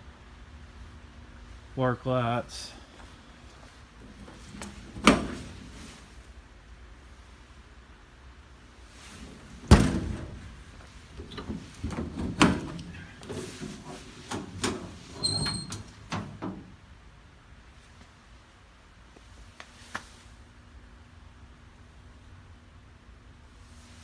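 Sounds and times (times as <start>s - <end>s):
metal door slamming: 4.5s - 5.8s, 9.2s - 10.6s, 11.2s - 16.8s
metal clanks and rattles: 11.2s - 16.7s.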